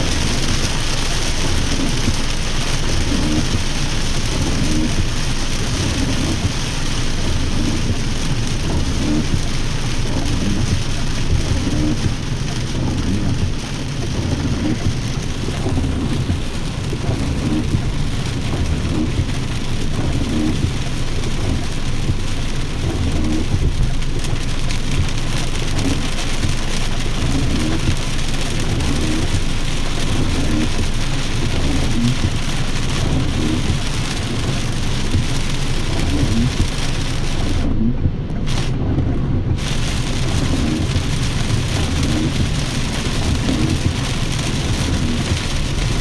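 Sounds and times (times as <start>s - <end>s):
heavy rain falling: 0.0s - 46.0s.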